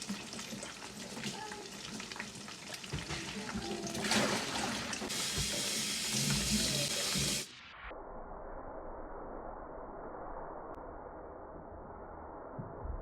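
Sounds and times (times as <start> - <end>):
food deep-frying in oil: 0.0 - 4.1.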